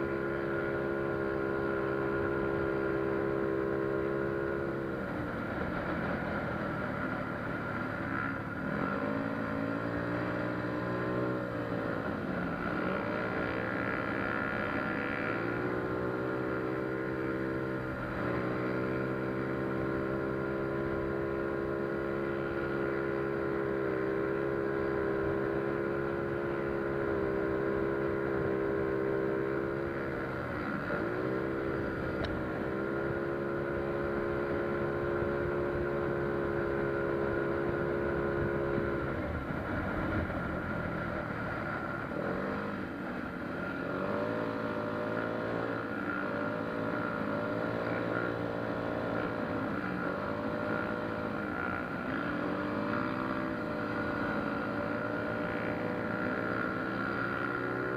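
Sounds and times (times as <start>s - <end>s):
scooter engine revving: 0.0s - 57.9s.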